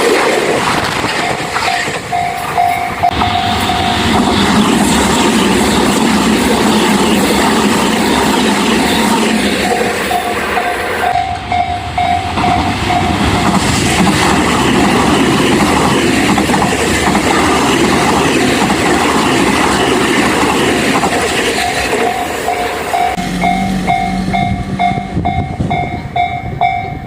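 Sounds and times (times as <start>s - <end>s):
electronic crossing warning bell: 1.2s - 4.0s, 21.6s - 27.0s
train wheels clattering over rail joints: 12.4s - 22.3s.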